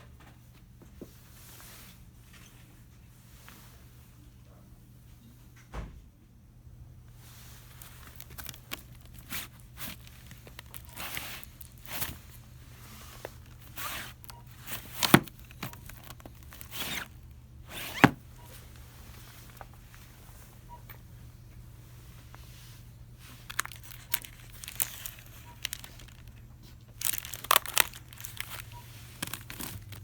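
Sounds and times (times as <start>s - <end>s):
plastic packaging crinkling: 7.5s - 18.1s, 23.2s - 30.0s.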